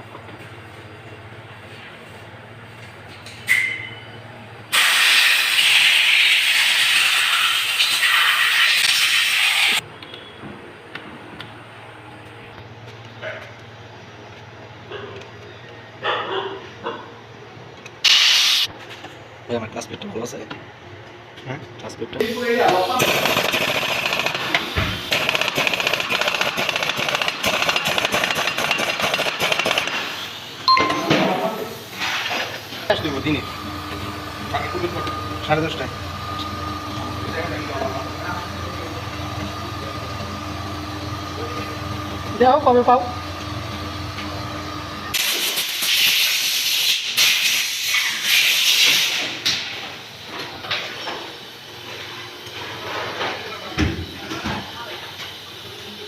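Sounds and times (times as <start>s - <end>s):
pressurised jet spraying hiss: 4.7s - 9.8s, 18.1s - 18.7s, 45.2s - 49.3s
fast mechanical rattle: 23.0s - 30.2s.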